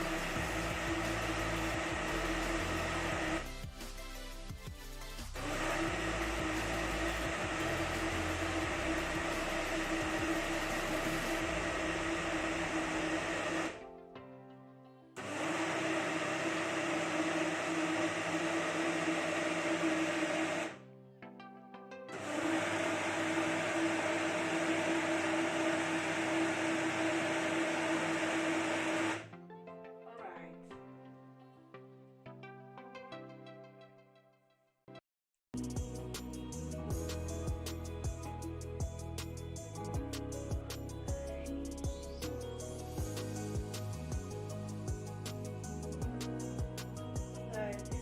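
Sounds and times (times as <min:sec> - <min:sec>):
electric blender running: 0:00.0 - 0:03.7, 0:05.1 - 0:13.8, 0:15.2 - 0:20.8, 0:22.2 - 0:29.3, 0:43.0 - 0:46.4.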